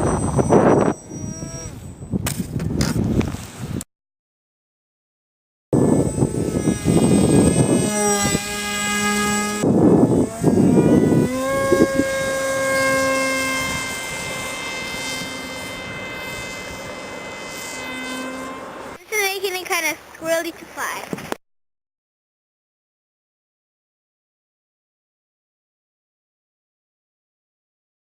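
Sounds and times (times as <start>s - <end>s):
model plane motor whining: 0.0s - 3.4s, 5.8s - 21.4s.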